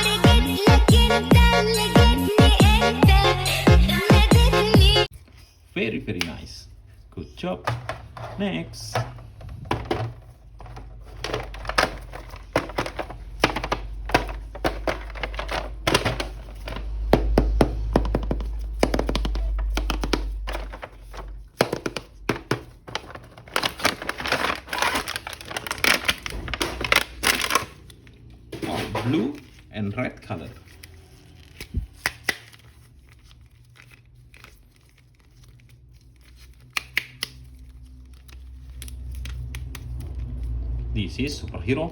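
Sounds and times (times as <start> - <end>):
packaging crinkling and clicks: 9.2 - 17.3, 18.0 - 28.4, 30.6 - 40.6.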